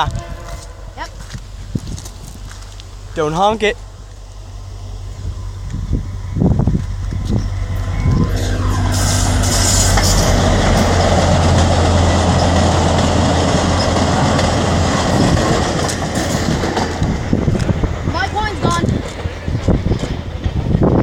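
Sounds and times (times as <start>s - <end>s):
passenger train passing: 0.0s - 21.0s
wheels clattering on rails: 5.0s - 21.0s.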